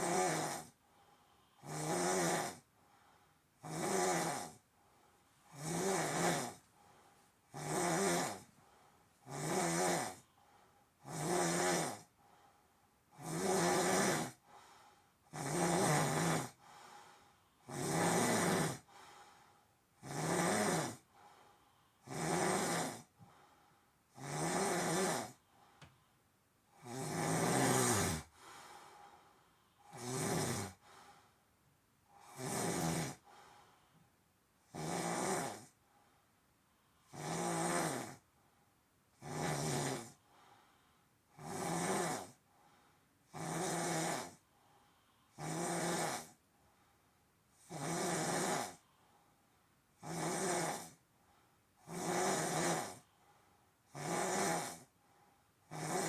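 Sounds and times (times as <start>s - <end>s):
person snoring: 0.0s - 0.8s, 1.6s - 2.6s, 3.6s - 4.6s, 5.5s - 6.7s, 7.5s - 8.5s, 9.2s - 10.3s, 11.0s - 12.1s, 13.1s - 14.5s, 15.3s - 16.7s, 17.6s - 19.1s, 20.0s - 21.1s, 22.0s - 23.1s, 24.1s - 25.4s, 26.7s - 28.8s, 29.8s - 31.0s, 32.1s - 33.4s, 34.7s - 35.8s, 37.1s - 38.2s, 39.2s - 40.2s, 41.3s - 42.4s, 43.3s - 44.4s, 45.3s - 46.4s, 47.6s - 48.9s, 50.0s - 51.0s, 51.8s - 53.1s, 53.9s - 54.9s, 55.7s - 56.0s.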